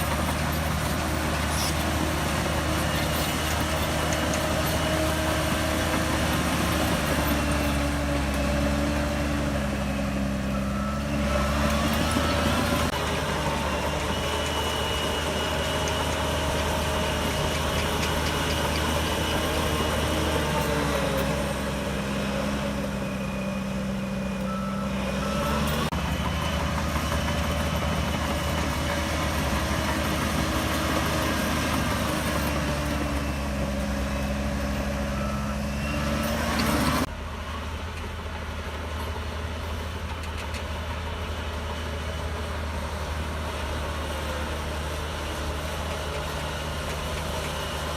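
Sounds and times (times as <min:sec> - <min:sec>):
bulldozer diesel engine running: 0:00.0 - 0:47.9
reversing alarm beeping: 0:02.3 - 0:37.6.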